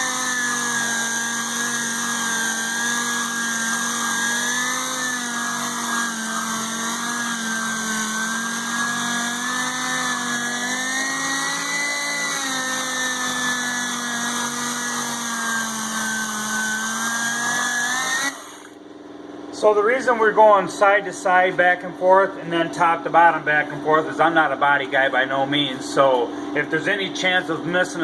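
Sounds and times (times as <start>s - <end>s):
sander humming: 0.0s - 18.8s.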